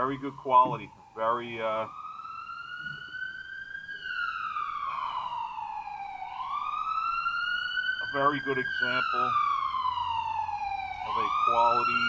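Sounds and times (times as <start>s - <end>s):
siren wailing: 0.0s - 12.0s.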